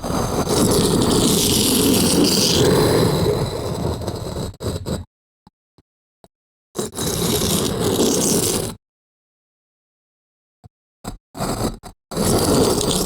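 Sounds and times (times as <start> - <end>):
stone grinding across stone: 0.0 - 5.1, 6.8 - 8.8, 11.4 - 13.0.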